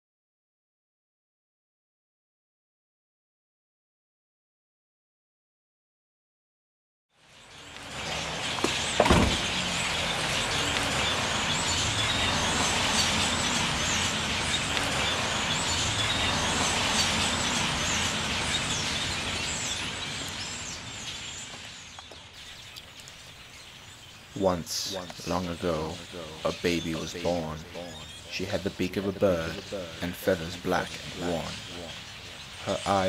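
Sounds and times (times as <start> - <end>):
bird chirps: 7.3 - 33.0
sudden thump: 8.6 - 9.6.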